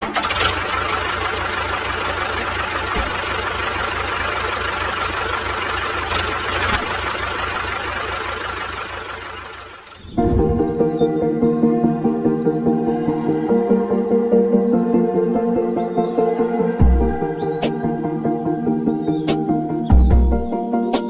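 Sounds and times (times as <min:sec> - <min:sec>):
small engine chugging: 0:00.0 - 0:10.0
background music: 0:10.2 - 0:21.0.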